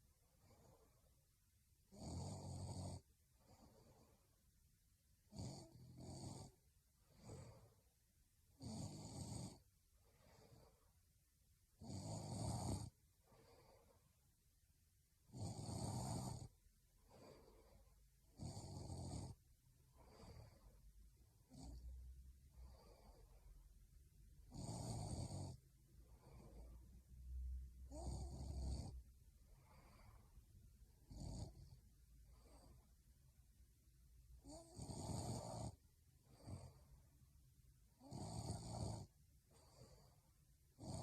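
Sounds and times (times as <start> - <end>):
faint breaths: 0.0 - 1.3, 3.3 - 4.5, 6.4 - 8.1, 9.6 - 11.2, 12.8 - 14.3, 15.5 - 41.0
woman snoring: 1.9 - 4.2, 5.3 - 7.8, 8.6 - 10.8, 11.8 - 14.0, 15.3 - 16.5, 17.1 - 19.4, 20.0 - 20.8, 21.4 - 21.9, 24.5 - 26.8, 27.9 - 29.0, 29.6 - 30.3, 31.0 - 32.9, 34.4 - 36.9, 38.0 - 40.2, 40.8 - 41.0.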